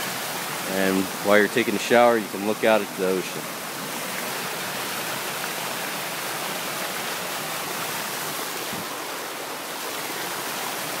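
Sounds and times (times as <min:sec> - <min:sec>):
waterfall pouring onto rocks: 0:00.0 - 0:11.0.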